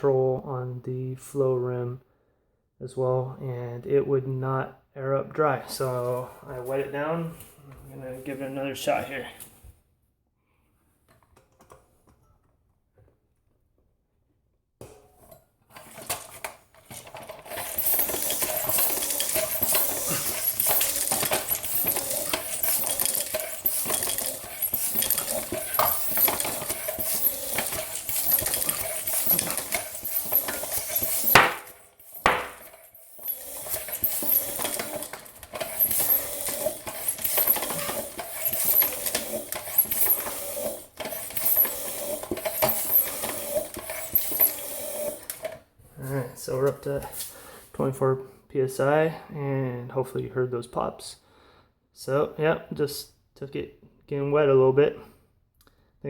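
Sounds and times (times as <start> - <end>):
floor pump strokes: 14.8 - 47.9
tire bead popping: 16.9 - 44.6
air hissing into tire: 17.5 - 45.3.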